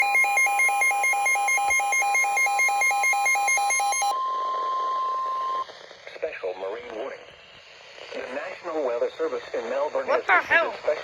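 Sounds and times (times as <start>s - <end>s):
fast pulsing beep: 0.0s - 5.6s
steady high alarm tone: 0.0s - 5.6s.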